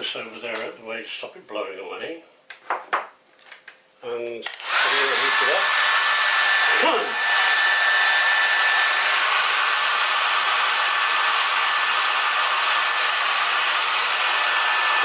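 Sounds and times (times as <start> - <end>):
hot-air blower running: 4.5 - 15.0.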